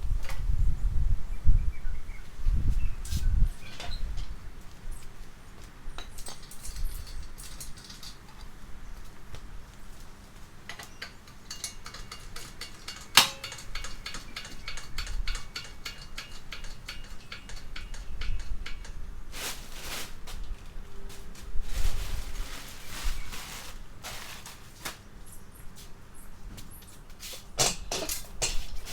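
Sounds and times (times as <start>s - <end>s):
metal tools clinking: 3.6s - 4.4s, 5.9s - 8.6s, 10.7s - 19.0s, 27.5s - 28.9s
small metallic clicks: 6.0s - 8.5s, 10.7s - 19.0s
sharp metal knock: 13.0s - 18.8s.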